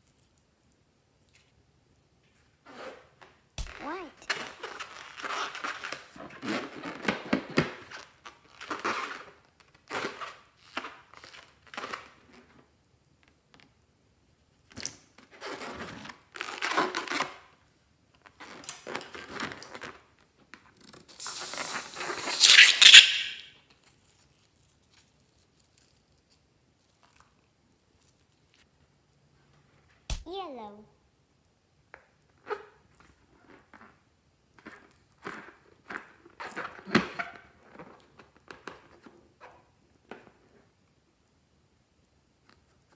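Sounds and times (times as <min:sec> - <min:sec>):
balloons rustling and tearing: 0:03.7 - 0:11.8, 0:16.3 - 0:17.3, 0:21.1 - 0:23.5.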